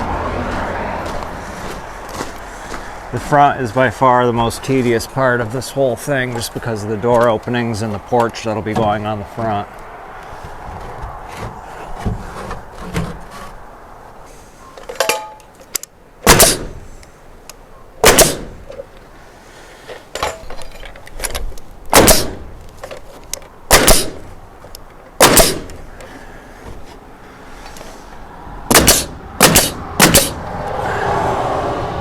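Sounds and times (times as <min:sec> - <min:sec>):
nail gun firing into wood: 0:16.2 - 0:16.8, 0:18.0 - 0:18.6, 0:21.9 - 0:22.5, 0:23.7 - 0:24.3, 0:25.2 - 0:25.8, 0:28.7 - 0:30.4.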